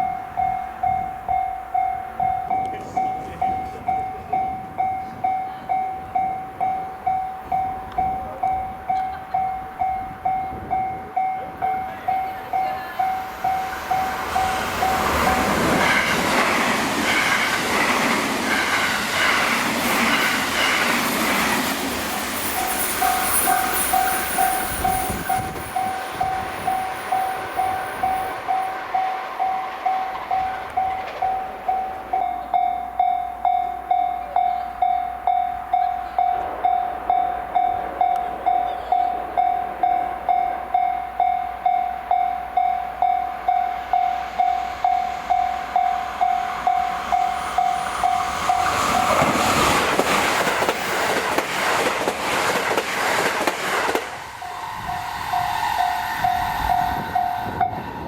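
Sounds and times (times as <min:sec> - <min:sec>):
level crossing bell ringing: 0:00.0 - 0:15.5, 0:22.5 - 0:49.2
passing trains running: 0:00.0 - 0:58.0.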